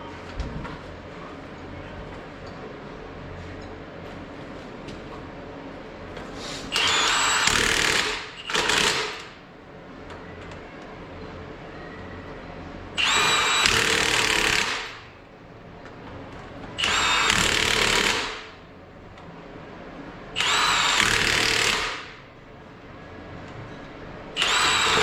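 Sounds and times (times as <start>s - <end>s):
power tool whining: 6.7s - 9.2s, 20.4s - 22.1s, 24.4s - 25.0s.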